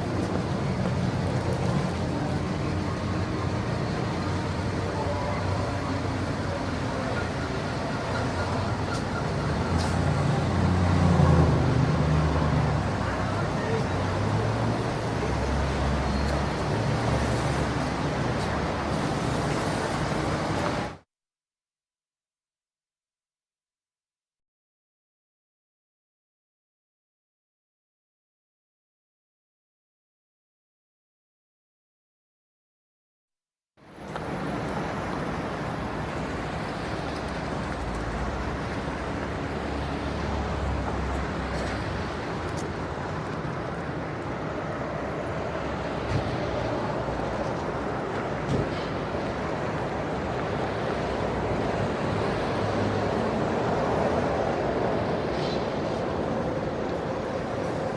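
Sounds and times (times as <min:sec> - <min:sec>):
cars passing: 0:00.0 - 0:21.0, 0:33.9 - 0:57.9
road traffic rumble: 0:00.0 - 0:21.0, 0:33.8 - 0:57.9.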